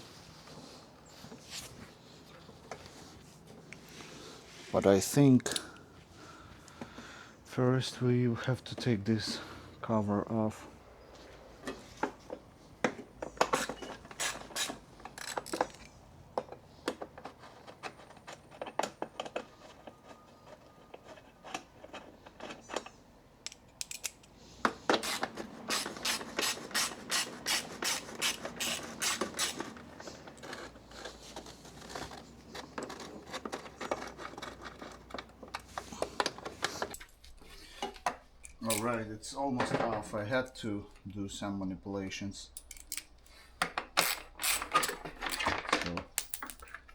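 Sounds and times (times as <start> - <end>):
tools clinking: 13.5 - 16.0, 22.4 - 32.1, 32.8 - 39.0, 42.5 - 46.9
ratchet wrench clicking: 25.0 - 29.7.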